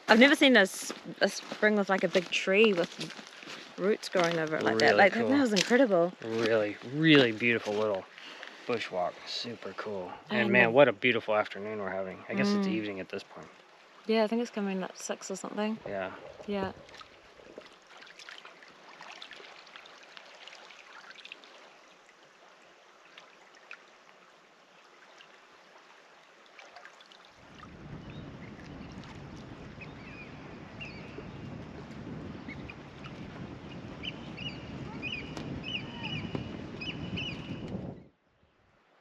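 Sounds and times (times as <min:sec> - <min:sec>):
faint hiss: 0:06.2 - 0:13.4, 0:15.9 - 0:16.2
birds chirping: 0:29.8 - 0:31.5, 0:33.7 - 0:37.8.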